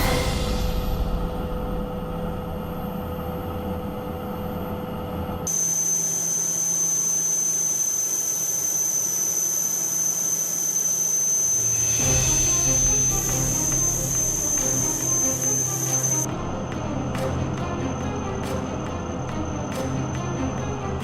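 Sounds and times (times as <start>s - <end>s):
turbine engine hum: 0.0s - 21.0s
rushing noise with high whistle: 5.5s - 16.3s.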